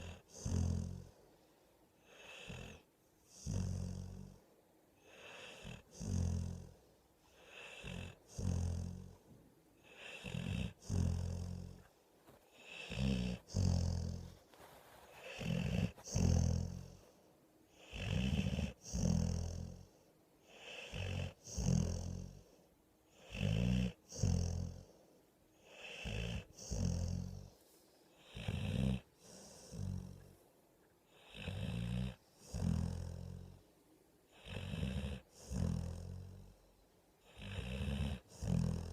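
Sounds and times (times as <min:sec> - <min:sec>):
rhythmic snoring: 0:00.0 - 0:01.2, 0:02.0 - 0:04.4, 0:05.0 - 0:06.8, 0:07.4 - 0:09.2, 0:09.8 - 0:11.9, 0:12.5 - 0:14.4, 0:15.2 - 0:17.1, 0:17.7 - 0:25.0, 0:25.6 - 0:27.6, 0:28.2 - 0:30.4, 0:31.1 - 0:33.6, 0:34.3 - 0:38.9.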